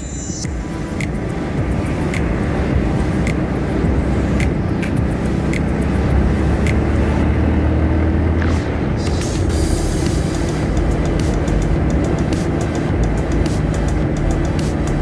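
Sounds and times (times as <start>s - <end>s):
motorcycle engine drone: 0.0s - 15.0s
scattered clicks: 4.3s - 7.1s.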